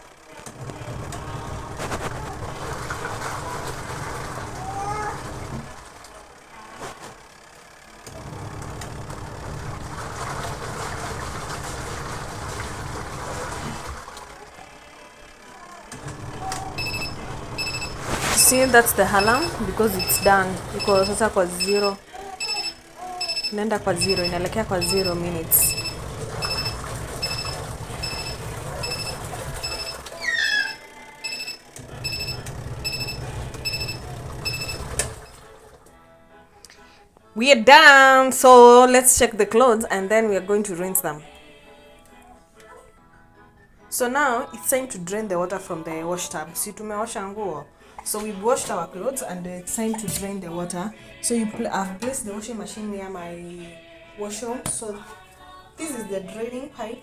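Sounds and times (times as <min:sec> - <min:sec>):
water and clothes churning: 0:00.0 - 0:07.3, 0:08.0 - 0:14.8, 0:15.8 - 0:35.8, 0:48.0 - 0:50.7
washing machine motor running: 0:00.0 - 0:35.9, 0:48.0 - 0:51.2
short high beeps: 0:16.8 - 0:30.0
brief squeak: 0:26.4 - 0:31.4.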